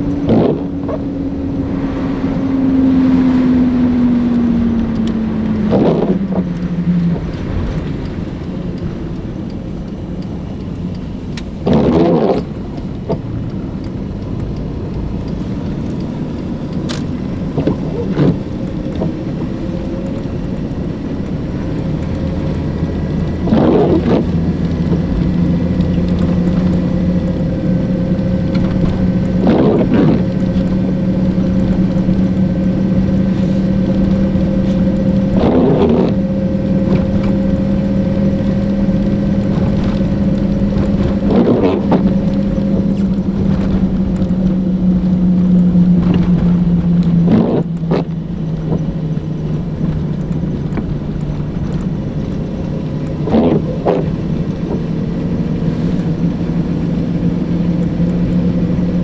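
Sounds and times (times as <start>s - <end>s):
car engine and road noise: 0.0s - 59.0s.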